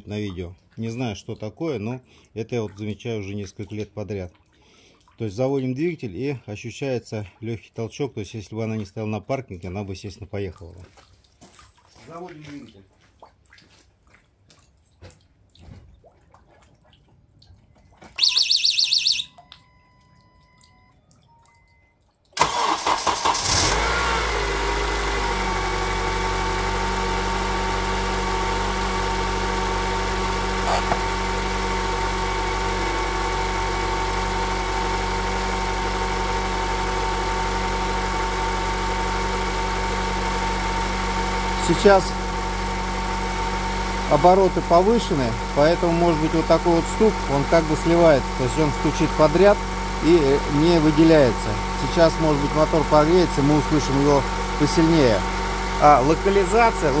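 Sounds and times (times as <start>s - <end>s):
faint dripping: 0.0s - 5.8s, 19.2s - 22.4s
pulsed beep: 18.2s - 22.0s
car engine cranking and idling: 22.4s - 57.0s.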